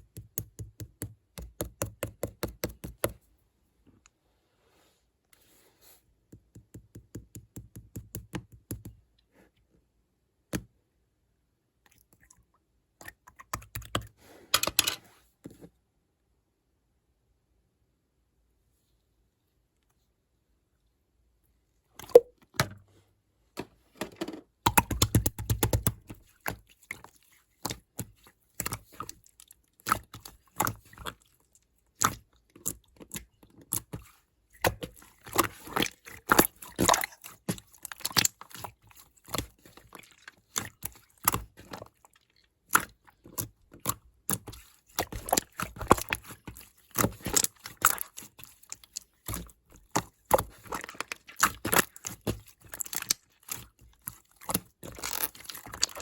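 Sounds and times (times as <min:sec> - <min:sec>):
slime squished by hand: 0:31.9 - 0:56.0.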